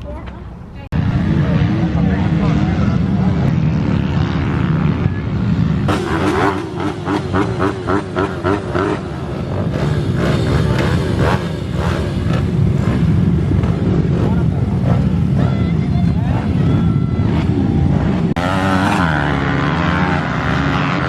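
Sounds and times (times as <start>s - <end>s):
small motorbike engine revving: 5.8s - 15.6s.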